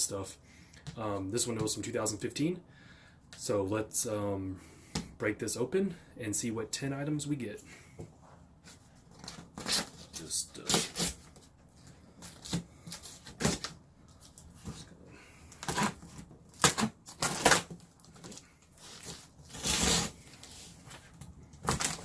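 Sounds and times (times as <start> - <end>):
packaging rustling: 9.0 - 22.0.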